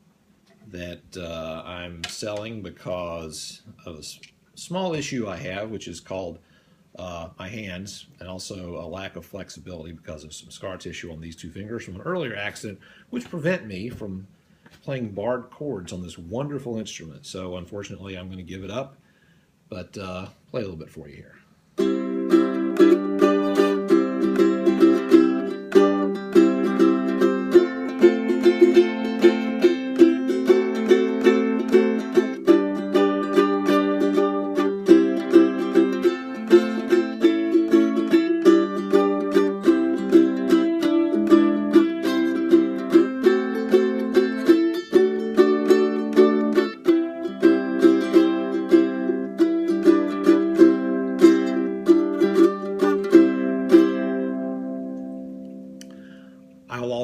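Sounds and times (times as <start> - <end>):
ukulele chords strummed: 21.8 - 56.1.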